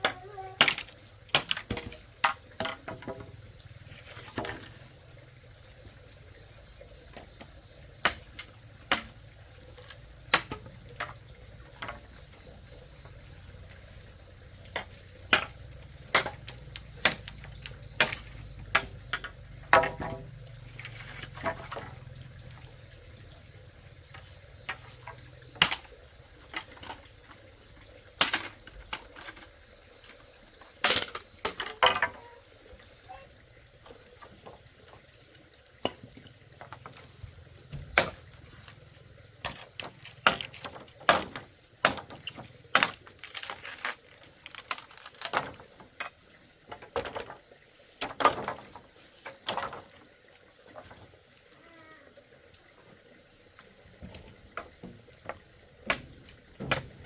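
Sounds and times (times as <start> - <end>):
wood knocking and clattering: 0.0 - 3.4, 4.0 - 4.8, 9.8 - 12.6, 14.7 - 22.7, 30.8 - 32.4, 35.8 - 38.8, 39.4 - 51.1, 53.6 - 57.0
high insect drone: 0.0 - 57.0.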